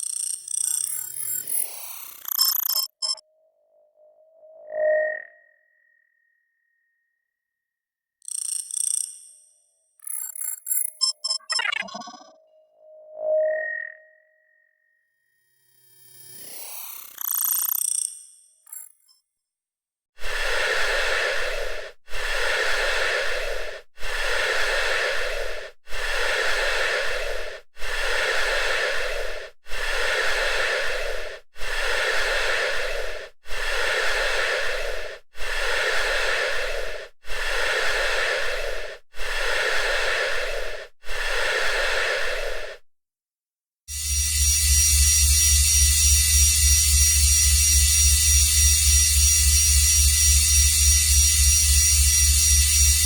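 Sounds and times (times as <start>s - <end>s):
electronic alarm buzz: 0.3s - 3.2s, 10.0s - 14.5s, 43.9s - 53.0s.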